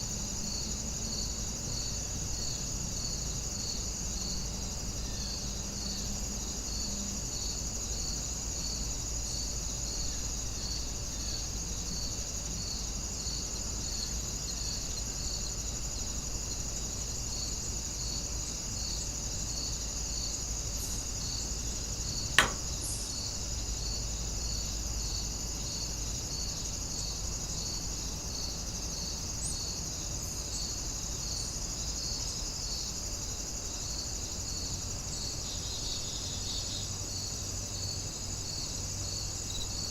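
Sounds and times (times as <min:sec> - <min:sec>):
crickets chirping: 0:00.0 - 0:39.9
sharp click: 0:22.4 - 0:23.1.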